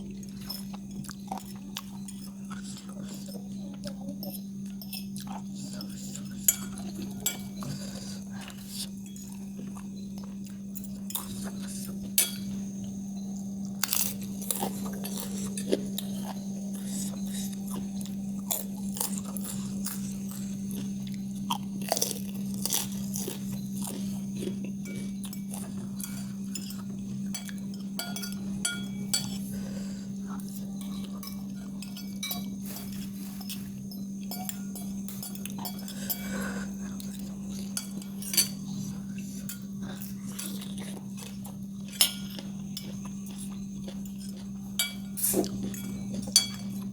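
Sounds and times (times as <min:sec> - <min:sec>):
chewing and crunchy bites: 0:00.0 - 0:46.9
steady low hum: 0:00.0 - 0:46.9
cutlery clinking on a plate: 0:04.2 - 0:07.8, 0:12.2 - 0:12.6, 0:22.6 - 0:29.5, 0:30.7 - 0:46.9.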